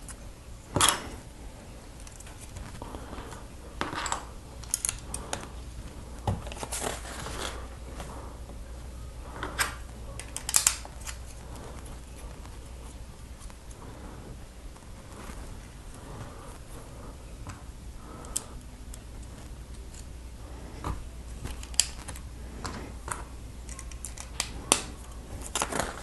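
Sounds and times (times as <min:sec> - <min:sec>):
plastic pieces clicking: 0:03.8 - 0:05.1, 0:09.6 - 0:11.4, 0:21.5 - 0:26.0.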